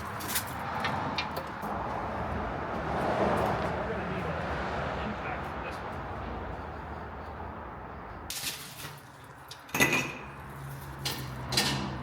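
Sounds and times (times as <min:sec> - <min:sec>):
metal clanks and knocks: 0:11.0 - 0:12.0.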